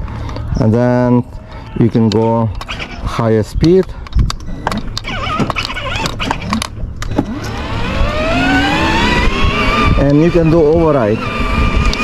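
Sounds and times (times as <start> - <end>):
electric motors whining: 4.5 - 12.0.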